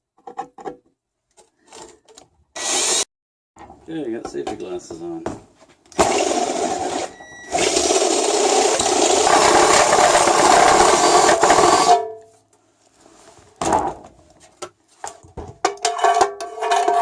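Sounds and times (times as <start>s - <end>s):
power drill cutting metal: 2.6s - 3.1s, 6.0s - 12.0s.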